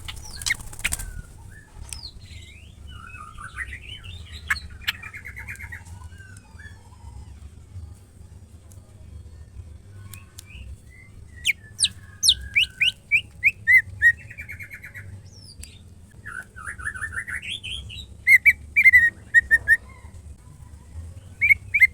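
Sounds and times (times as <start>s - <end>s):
bird whistles and chirps: 0.0s - 7.0s, 10.5s - 15.6s, 16.2s - 20.1s, 21.4s - 21.9s.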